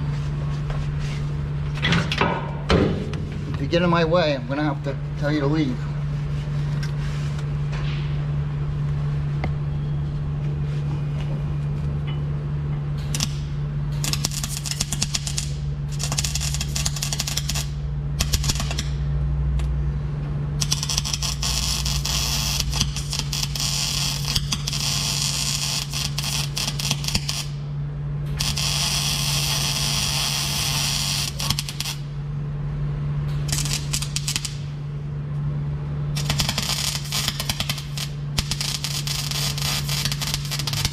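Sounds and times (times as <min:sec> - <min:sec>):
steady low hum: 0:00.0 - 0:40.9
welding arc crackling: 0:13.0 - 0:19.1, 0:20.6 - 0:27.6, 0:28.3 - 0:32.1, 0:33.4 - 0:34.8, 0:36.1 - 0:40.9.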